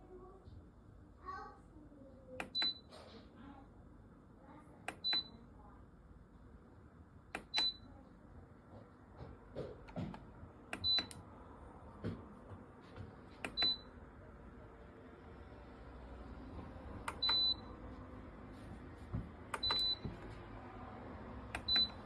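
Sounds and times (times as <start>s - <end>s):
button clicks: 2.4s - 2.9s, 4.9s - 5.3s, 7.4s - 7.8s, 10.8s - 11.2s, 13.4s - 13.8s, 17.1s - 17.6s, 19.5s - 20.2s, 21.6s - 22.0s.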